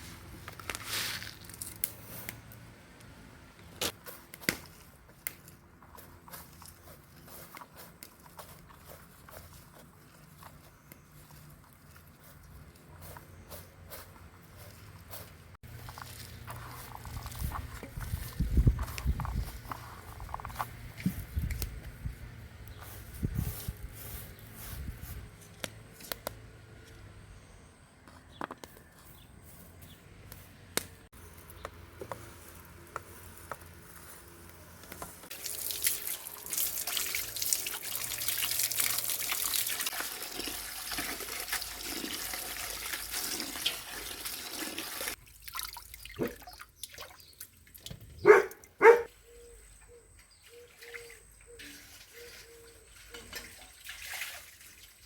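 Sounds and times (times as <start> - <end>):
water running: 35.3 - 46.9.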